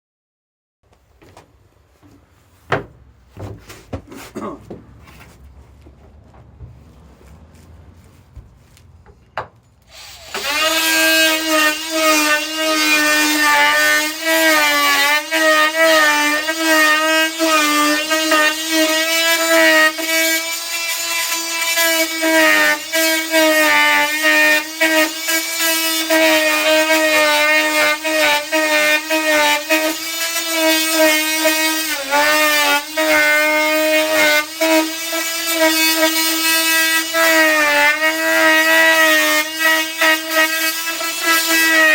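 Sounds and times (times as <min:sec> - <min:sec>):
oscillating multi-tool cutting: 0:09.9 - 0:41.9.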